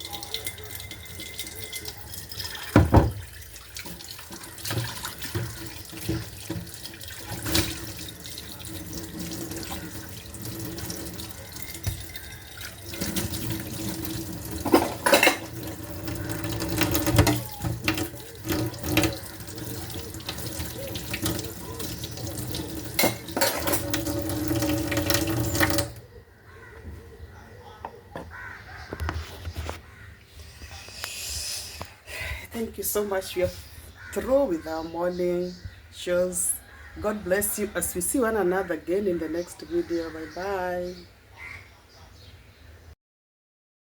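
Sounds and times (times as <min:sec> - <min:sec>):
running water: 0:00.0 - 0:26.0
knocks and clinks: 0:11.7 - 0:19.2, 0:22.8 - 0:26.0.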